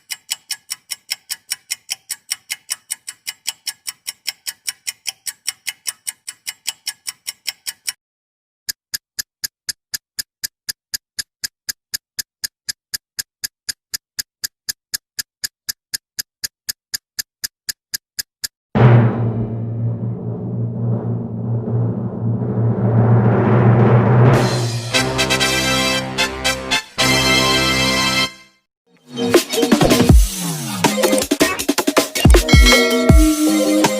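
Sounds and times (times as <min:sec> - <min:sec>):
clock ticking: 0:00.0 - 0:08.0, 0:08.7 - 0:18.6, 0:29.7 - 0:33.9.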